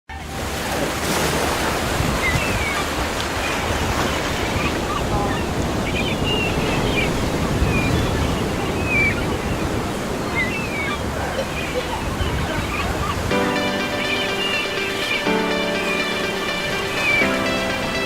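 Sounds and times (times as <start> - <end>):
ocean surf washing onto beach: 0.1 - 18.0
wind on microphone: 1.0 - 13.3
high chirping calls: 10.2 - 18.0.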